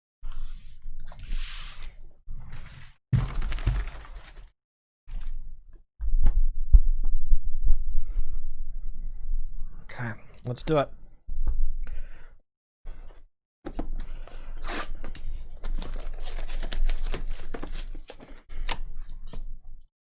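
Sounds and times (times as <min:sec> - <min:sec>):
wrapping torn and crinkled: 0:02.6 - 0:04.5, 0:15.6 - 0:18.4.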